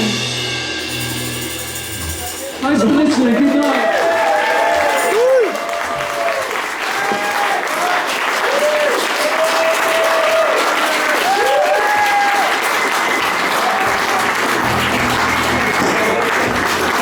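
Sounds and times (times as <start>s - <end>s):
audience applauding and cheering: 2.6s - 17.0s
low steady music notes: 13.8s - 17.0s.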